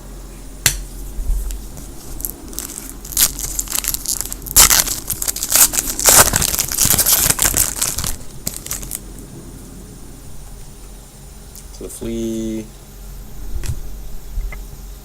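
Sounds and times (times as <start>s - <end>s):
foil wrapper crinkling and tearing: 1.3s - 9.1s.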